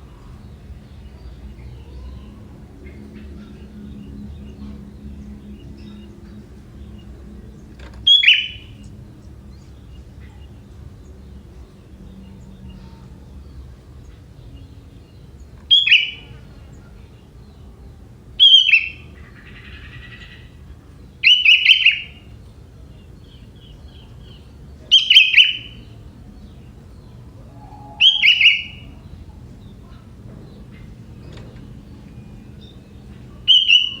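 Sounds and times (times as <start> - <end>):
bird calling: 7.0 - 9.3, 14.1 - 22.4, 23.0 - 34.0.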